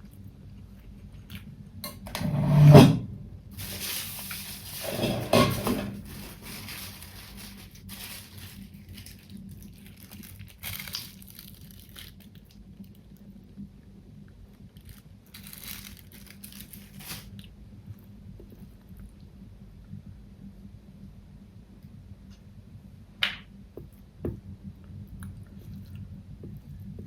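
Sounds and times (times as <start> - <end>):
person chewing food: 24.9 - 27.0.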